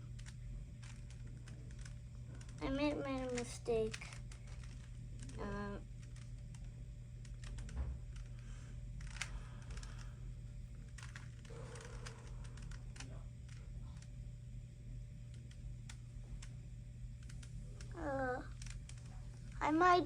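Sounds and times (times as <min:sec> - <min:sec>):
puzzle cube clicking: 0:09.0 - 0:10.0, 0:10.9 - 0:13.1.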